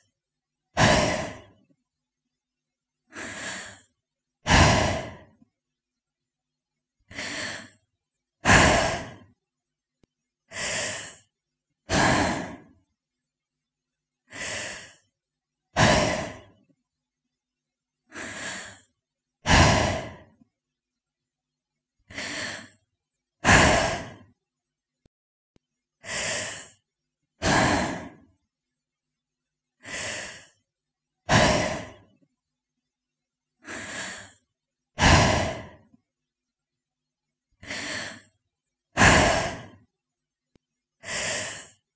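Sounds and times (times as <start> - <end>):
woman breathing slowly: 0.8 - 1.6, 3.1 - 5.5, 7.0 - 7.8, 8.4 - 9.4, 10.5 - 12.9, 14.2 - 16.7, 18.1 - 20.5, 22.0 - 22.8, 23.4 - 24.3, 26.0 - 28.3, 29.8 - 30.7, 31.3 - 32.2, 33.6 - 36.0, 37.6 - 39.8, 41.0 - 41.8.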